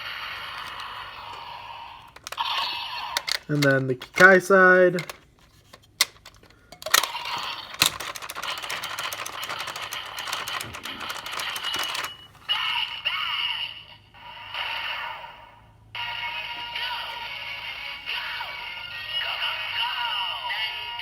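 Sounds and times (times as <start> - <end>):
plastic toy clicks: 0.5 - 12.3
toy electronic sounds and music: 6.9 - 12.2.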